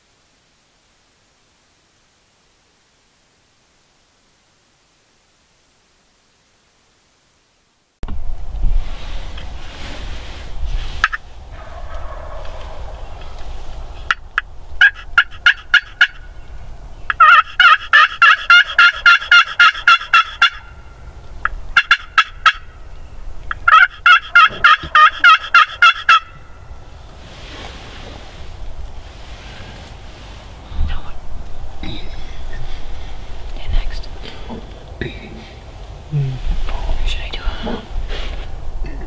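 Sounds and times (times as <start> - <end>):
turkey calling: 11.0 - 27.0.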